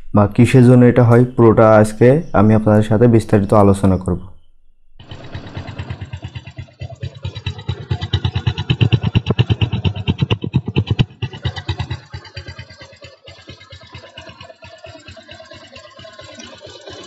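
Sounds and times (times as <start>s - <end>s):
motorcycle engine running: 5.0s - 17.0s.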